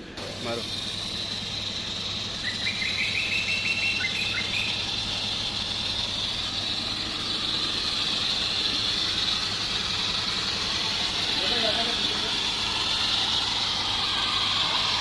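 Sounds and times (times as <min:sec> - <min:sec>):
water jetting through a pipe: 0:00.0 - 0:15.0
high squeaky chirps: 0:01.2 - 0:05.8.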